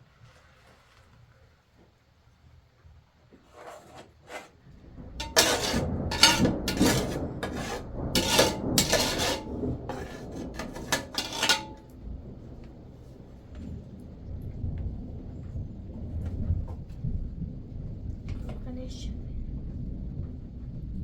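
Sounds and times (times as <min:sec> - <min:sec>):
rough scraping strokes: 0:03.4 - 0:04.6, 0:05.2 - 0:11.8.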